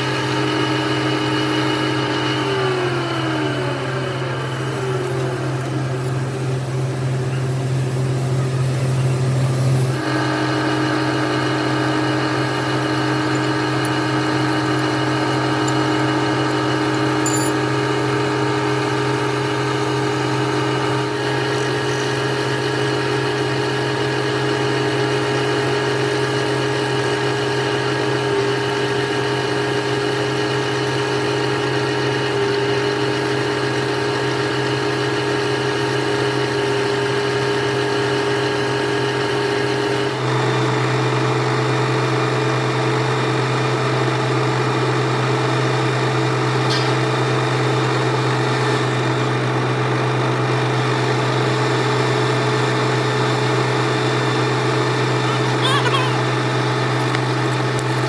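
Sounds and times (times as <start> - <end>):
metal lathe humming: 0.1 - 7.8, 9.9 - 25.7.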